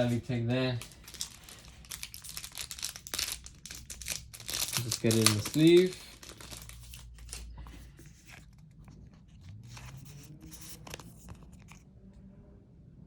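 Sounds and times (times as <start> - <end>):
trading cards rustling: 0.0 - 11.8
card sliding into plastic sleeve: 4.8 - 11.8.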